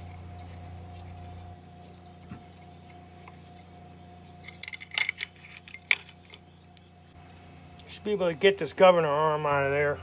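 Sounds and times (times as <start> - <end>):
steady low hum: 0.0 - 10.0
small metal parts clinking: 4.4 - 7.0.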